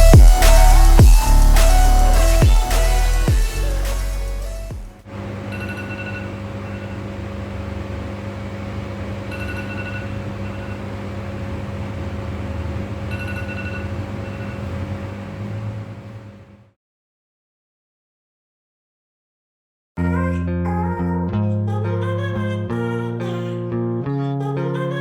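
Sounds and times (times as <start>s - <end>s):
low electric hum: 0.0s - 16.7s.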